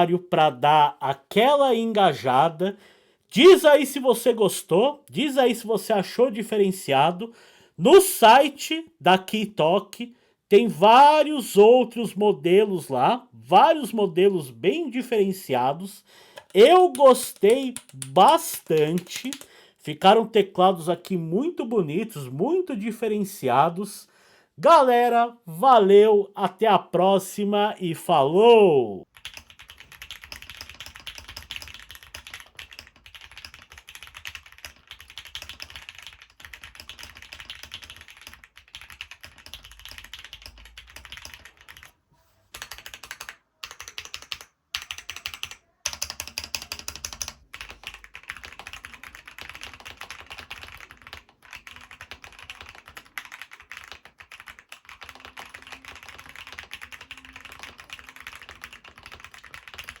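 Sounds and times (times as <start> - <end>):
typing on a mechanical keyboard: 16.4 - 19.5, 29.1 - 41.9, 42.5 - 60.0.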